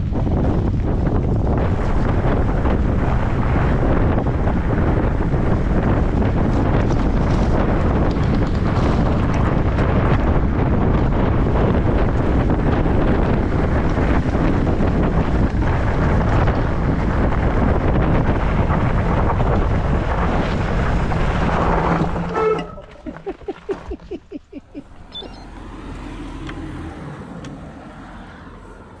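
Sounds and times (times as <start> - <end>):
wind buffeting microphone: 0.0 - 29.0
brief squeal: 22.3 - 23.1, 24.8 - 26.5.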